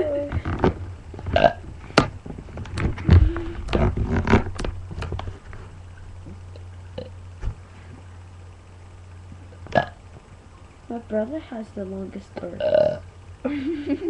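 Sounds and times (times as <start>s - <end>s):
person burping: 1.3s - 1.6s, 9.7s - 10.0s, 12.6s - 13.0s.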